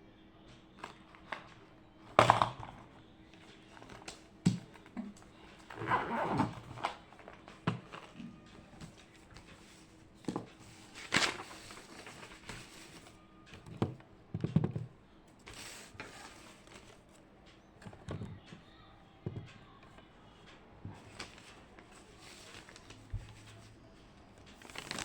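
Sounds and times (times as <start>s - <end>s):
faint room hum: 0.0s - 25.0s
objects knocking on a desk: 13.6s - 14.9s.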